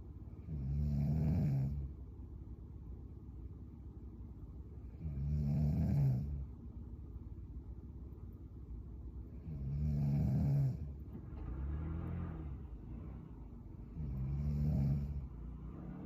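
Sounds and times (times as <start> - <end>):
woman snoring: 0.4 - 1.9, 5.0 - 6.4, 9.4 - 10.9, 13.9 - 15.3.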